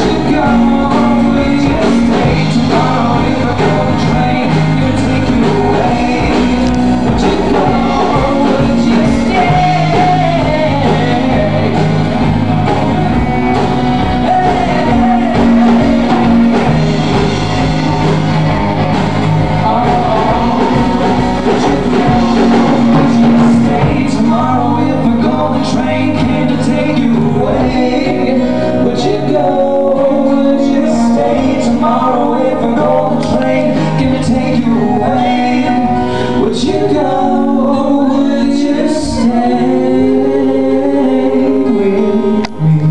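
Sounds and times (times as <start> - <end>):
men singing with instruments: 0.0 - 42.9.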